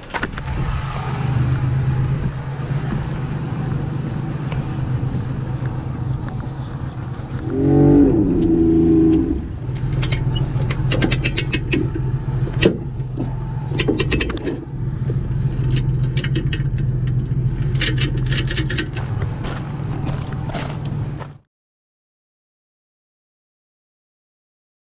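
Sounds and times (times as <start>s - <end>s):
motor humming: 0.4s - 17.8s
metal clinks and rattles: 9.7s - 14.5s, 15.6s - 19.2s.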